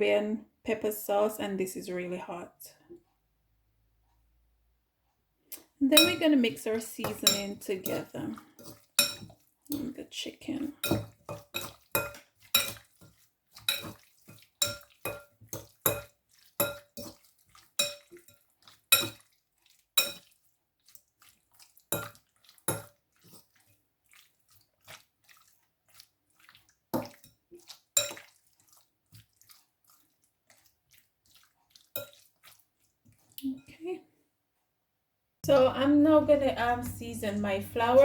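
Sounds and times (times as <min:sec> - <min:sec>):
spoon clinking against bowl: 0:06.0 - 0:06.3, 0:07.0 - 0:09.9, 0:10.8 - 0:12.9, 0:13.6 - 0:17.2, 0:17.8 - 0:19.2, 0:20.0 - 0:20.3, 0:21.9 - 0:22.9, 0:28.0 - 0:28.3.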